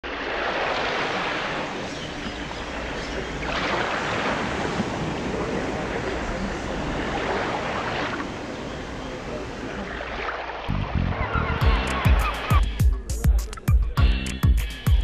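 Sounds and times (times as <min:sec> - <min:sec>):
steady rushing noise: 0:00.0 - 0:10.8.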